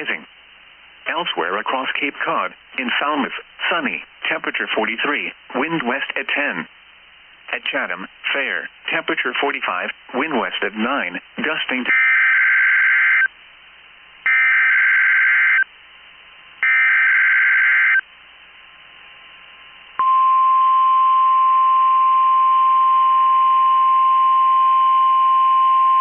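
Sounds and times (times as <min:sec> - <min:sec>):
steady warning alarm tone: 0:11.9 - 0:13.3, 0:14.3 - 0:15.7, 0:16.6 - 0:18.0.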